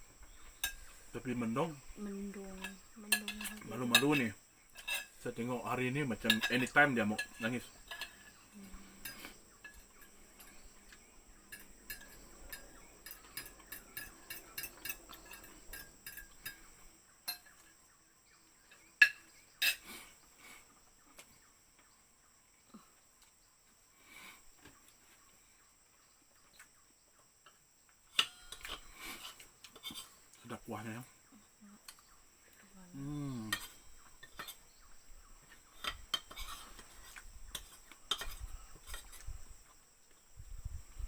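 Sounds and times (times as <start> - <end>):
cutlery clinking on plate: 6.2 - 8.4, 11.5 - 16.7, 17.3 - 17.7, 28.1 - 30.1, 35.8 - 39.2.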